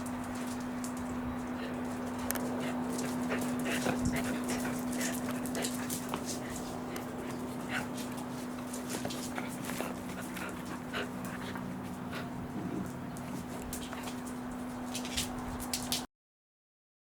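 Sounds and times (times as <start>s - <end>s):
steady low hum: 0.0s - 16.1s.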